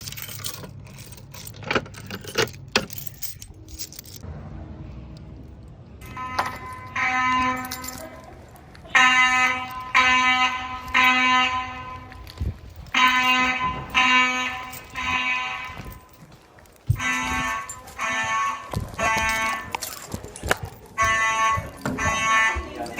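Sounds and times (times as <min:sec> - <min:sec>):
fire alarm horn pulsing: 0:06.0 - 0:16.3, 0:16.9 - 0:20.1, 0:20.9 - 0:22.9.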